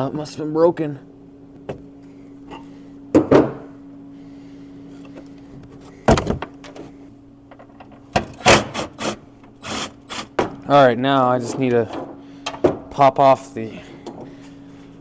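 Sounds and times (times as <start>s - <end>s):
steady low hum: 0.0s - 15.0s
sharp knocks of car parts: 3.1s - 3.7s, 6.1s - 6.8s, 10.3s - 10.6s, 12.0s - 12.9s.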